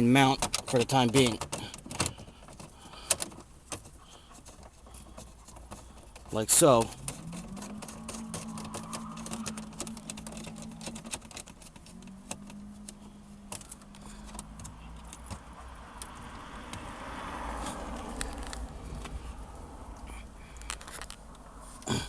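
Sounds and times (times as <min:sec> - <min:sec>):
clicks and jingling of metal parts: 0:00.0 - 0:16.3, 0:20.5 - 0:21.4.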